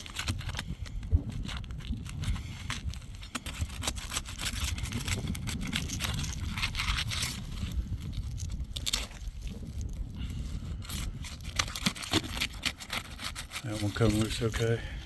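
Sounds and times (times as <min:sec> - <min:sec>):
roof shingles scraping: 0:00.0 - 0:14.9
shingles cracking: 0:10.8 - 0:14.8.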